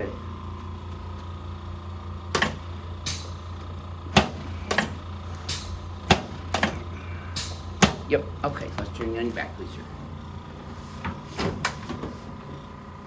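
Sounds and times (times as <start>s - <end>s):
low hum: 0.0s - 8.4s.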